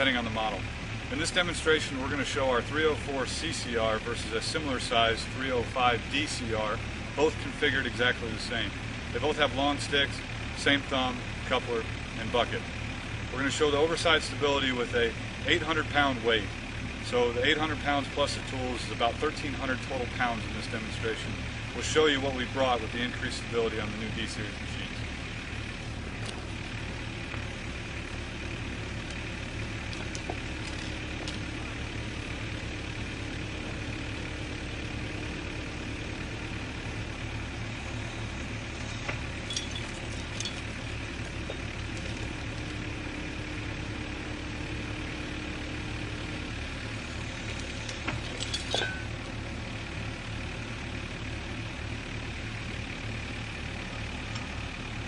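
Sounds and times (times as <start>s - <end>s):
diesel engine running: 0.0s - 55.0s
hydraulic whine: 4.0s - 50.4s
sharp metallic clinks: 38.1s - 42.4s, 47.4s - 49.2s.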